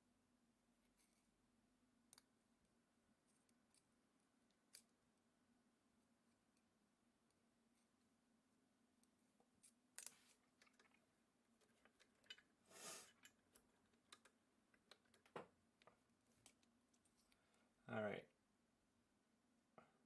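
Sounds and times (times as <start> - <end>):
soft rustle: 9.0 - 14.0.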